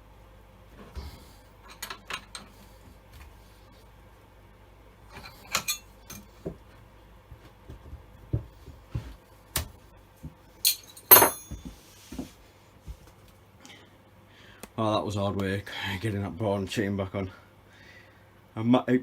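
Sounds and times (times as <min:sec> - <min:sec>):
metal clinks and knocks: 0:01.6 - 0:02.5, 0:05.1 - 0:06.3, 0:10.6 - 0:11.8.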